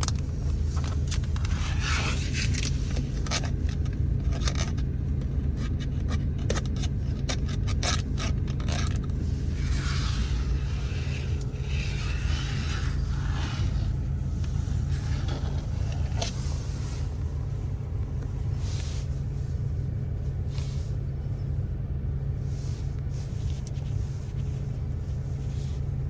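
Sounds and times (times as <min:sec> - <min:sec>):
car cabin rumble: 0:00.0 - 0:26.0
soft rubs or taps: 0:09.2 - 0:19.8.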